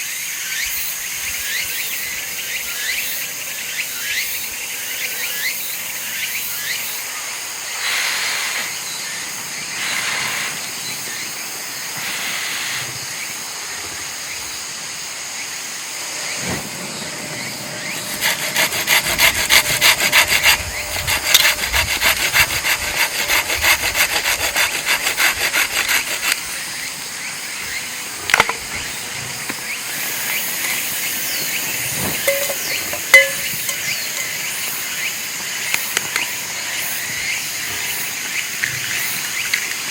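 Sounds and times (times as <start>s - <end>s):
insects chirping: 0.0s - 39.9s
hand saw cutting wood: 17.8s - 26.7s, 28.3s - 28.6s, 30.1s - 35.0s.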